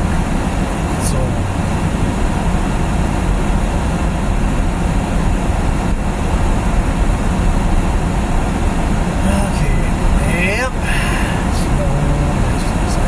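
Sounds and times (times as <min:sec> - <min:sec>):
car cabin road rumble: 0:00.0 - 0:13.0
road hiss: 0:06.6 - 0:13.0.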